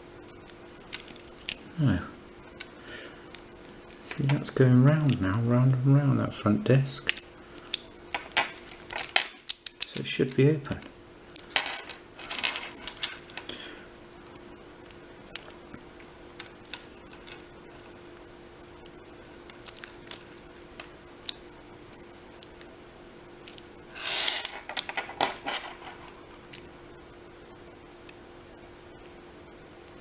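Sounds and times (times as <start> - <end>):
clinking and jangling: 11.4 - 13.2, 24.2 - 26.1.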